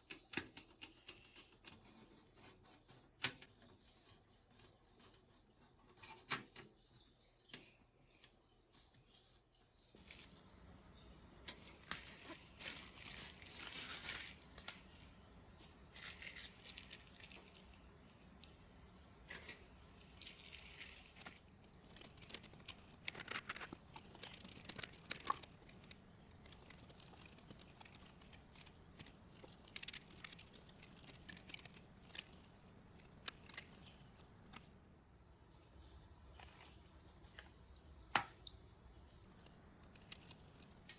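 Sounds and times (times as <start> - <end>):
packaging crinkling and rustling: 10.0 - 10.5, 11.5 - 18.6, 19.3 - 34.6.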